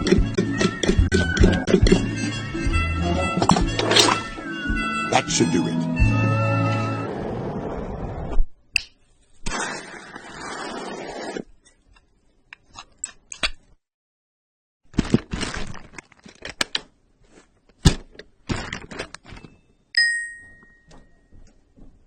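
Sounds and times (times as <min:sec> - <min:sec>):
metallic ding: 0:20.0 - 0:21.3.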